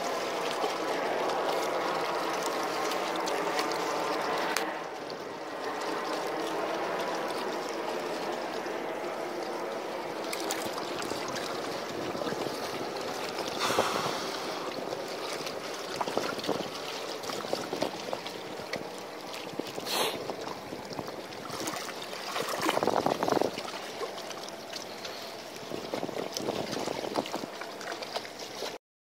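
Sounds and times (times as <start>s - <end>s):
seawater lapping and splashing: 0.0s - 28.8s
wind noise: 13.6s - 14.9s, 22.4s - 23.7s, 25.7s - 27.5s.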